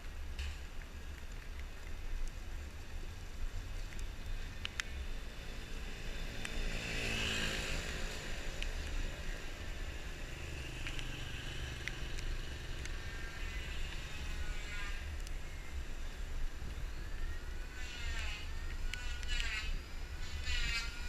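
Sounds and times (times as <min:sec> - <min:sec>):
vehicle engine passing by: 0:05.4 - 0:14.7.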